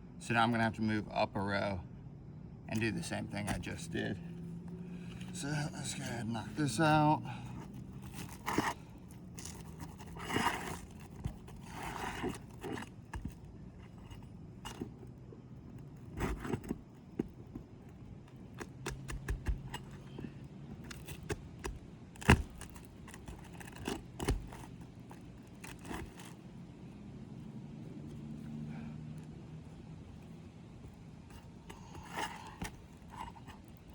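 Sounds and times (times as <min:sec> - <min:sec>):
shingles scraping and crackling: 0:04.9 - 0:26.9, 0:29.8 - 0:33.9.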